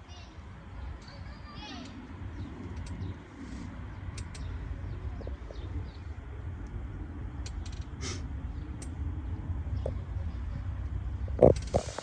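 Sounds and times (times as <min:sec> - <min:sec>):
birds chirping: 0:00.0 - 0:12.0
steady low rumble: 0:00.0 - 0:12.0
sharp clicks: 0:02.6 - 0:03.2, 0:04.0 - 0:04.6, 0:07.4 - 0:08.0, 0:08.7 - 0:09.0.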